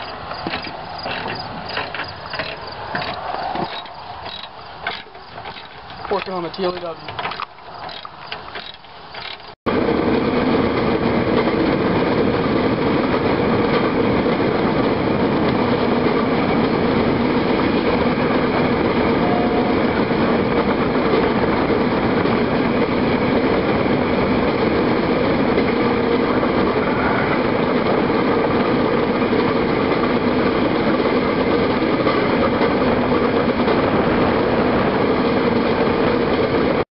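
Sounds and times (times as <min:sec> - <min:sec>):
wheels on rails: 0:00.0 - 0:09.6
rail cart engine: 0:00.0 - 0:36.8.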